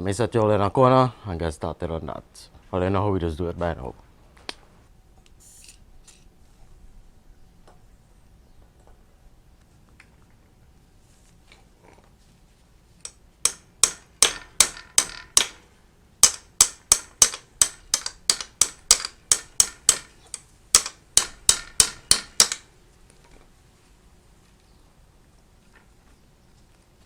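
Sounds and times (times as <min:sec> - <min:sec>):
tool striking metal: 0:13.0 - 0:22.7.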